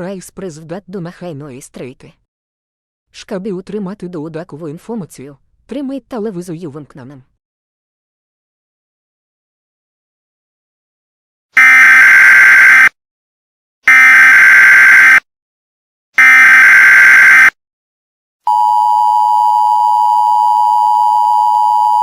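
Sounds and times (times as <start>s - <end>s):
data bursts: 11.6s - 12.9s, 13.9s - 15.2s, 16.2s - 17.5s.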